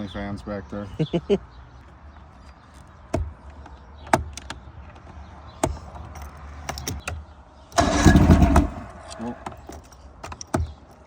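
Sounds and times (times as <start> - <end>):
sharp clicks and knocks: 2.4 - 7.3, 8.1 - 11.0.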